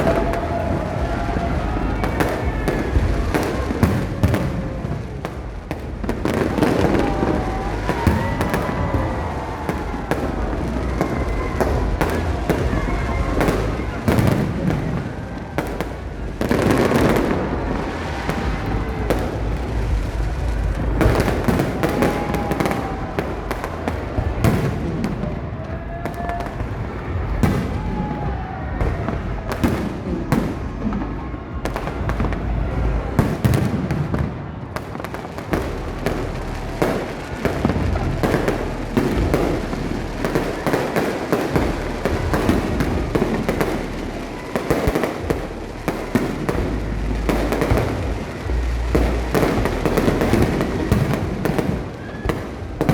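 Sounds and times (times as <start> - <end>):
fireworks bangs and crackling: 0.0 - 52.9.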